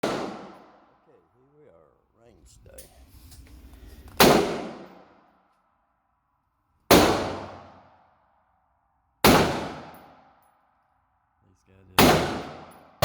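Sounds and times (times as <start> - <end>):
gunshots echoing: 0.0 - 0.9, 4.0 - 5.3, 6.9 - 7.9, 9.2 - 10.2, 12.0 - 13.0.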